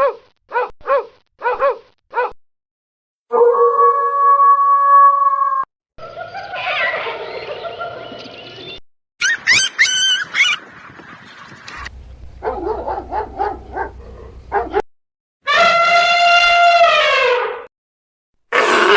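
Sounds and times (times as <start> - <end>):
mixed animal calls: 11.8 - 14.8.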